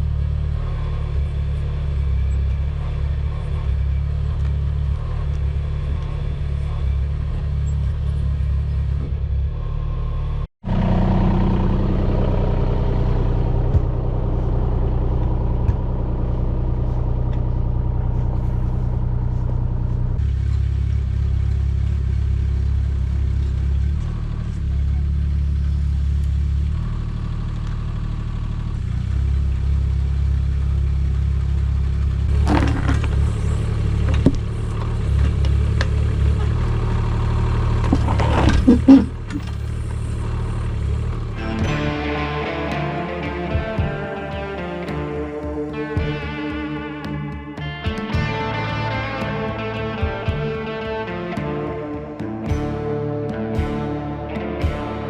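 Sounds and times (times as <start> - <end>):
excavator engine running: 0.0 - 55.0
bucket knocking on stones: 32.5 - 33.2.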